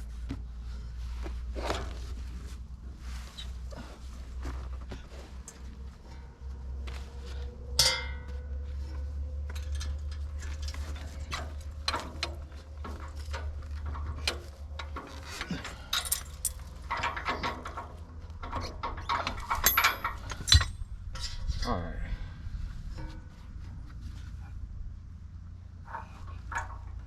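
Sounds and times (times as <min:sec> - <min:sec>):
low steady rumble: 0:00.0 - 0:27.0
metal parts clicking and clinking: 0:09.4 - 0:21.4.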